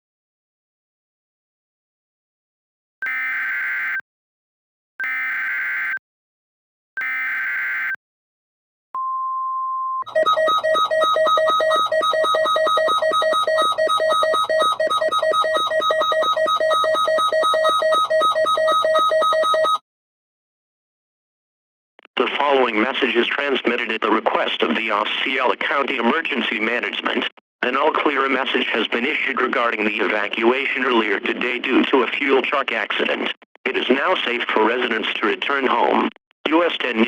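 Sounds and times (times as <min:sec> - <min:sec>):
data header bursts: 0:10.0 - 0:19.2.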